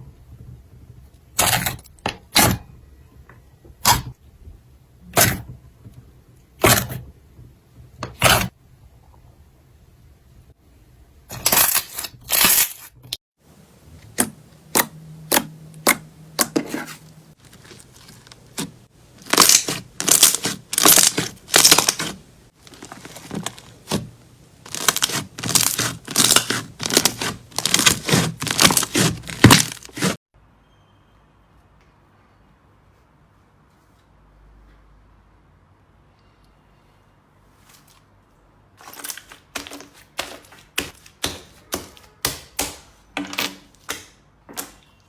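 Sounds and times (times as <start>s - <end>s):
slime crackling and crunching: 17.4s - 24.0s, 24.6s - 30.2s.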